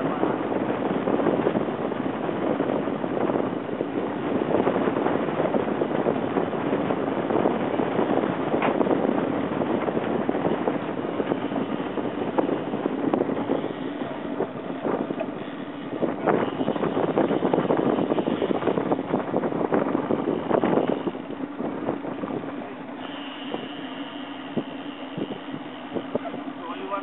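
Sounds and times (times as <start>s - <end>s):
motorboat engine hum: 0.0s - 27.0s
wind noise on microphone: 0.0s - 27.0s
hull knocking on water: 0.7s - 26.7s.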